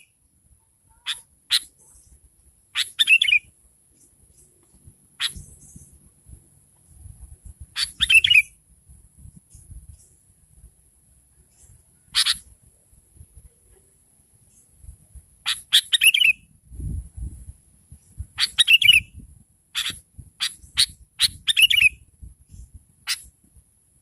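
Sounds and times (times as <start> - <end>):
bird chirping: 0.8 - 6.1, 7.7 - 8.6, 11.3 - 12.5, 15.4 - 16.5, 17.9 - 23.3.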